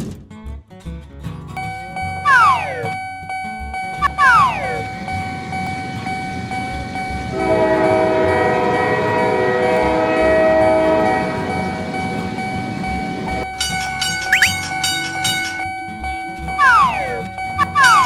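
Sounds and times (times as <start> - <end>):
steady ringing tone: 1.6 - 8.6, 9.4 - 18.0
train rumbling past: 5.0 - 15.8
train horn chord: 7.2 - 15.6.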